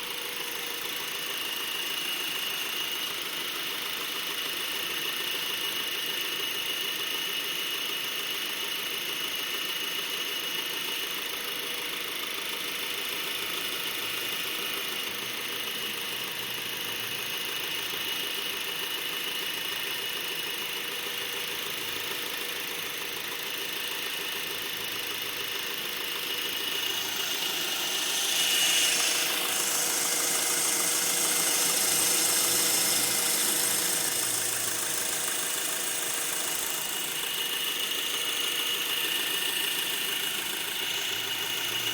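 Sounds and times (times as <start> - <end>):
car engine running: 25.6 - 41.6.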